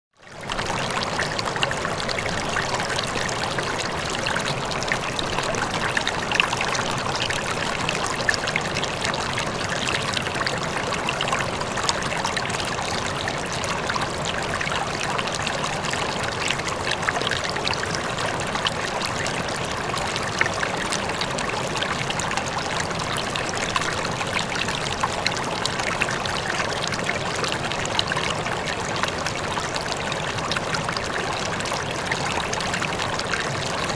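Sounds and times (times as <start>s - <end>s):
river flowing over rocks: 0.4s - 33.9s.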